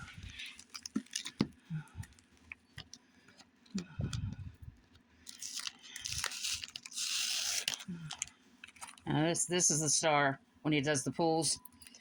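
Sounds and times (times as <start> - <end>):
plastic packaging crinkling: 0.0 - 3.5, 4.1 - 9.1.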